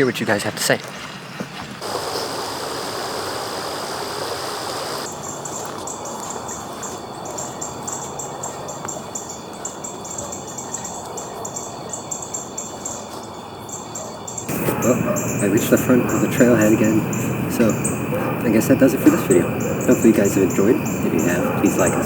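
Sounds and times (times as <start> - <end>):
birds chirping: 1.8 - 22.0
rapid high-pitched chirps: 14.5 - 22.0
steady rushing background noise: 14.5 - 22.0.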